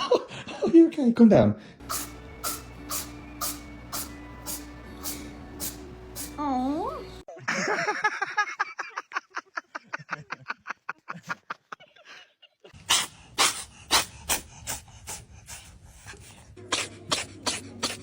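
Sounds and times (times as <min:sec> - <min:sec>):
cat sneezing: 0:01.8 - 0:06.4, 0:12.8 - 0:15.2, 0:16.6 - 0:18.0.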